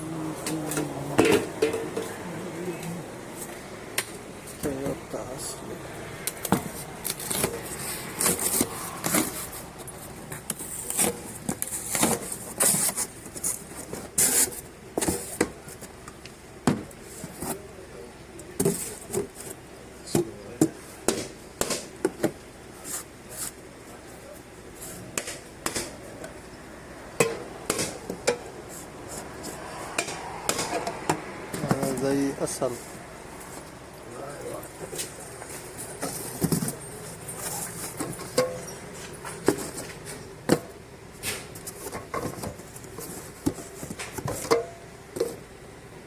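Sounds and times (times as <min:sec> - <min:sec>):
hand tools clicking and knocking: 0:37.5 - 0:39.8.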